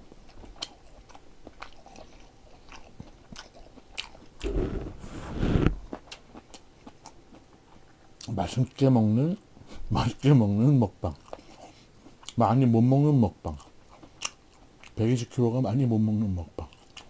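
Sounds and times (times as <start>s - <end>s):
person chewing food: 0.3s - 8.0s.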